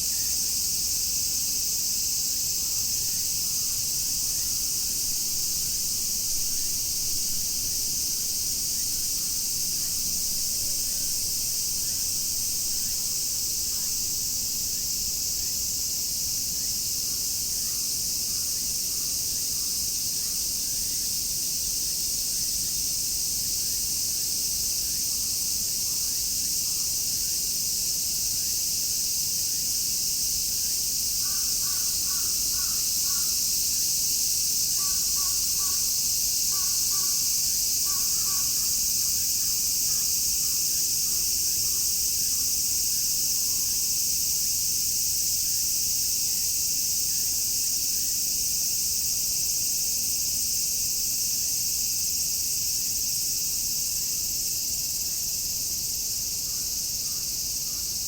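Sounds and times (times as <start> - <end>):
cicadas shrilling: 0.0 - 58.0.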